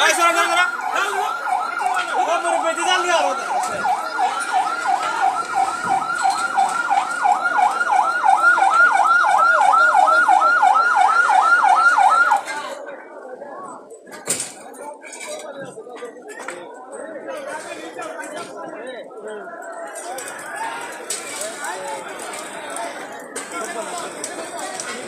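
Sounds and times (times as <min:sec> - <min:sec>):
fire engine siren yelping: 0:00.0 - 0:12.8.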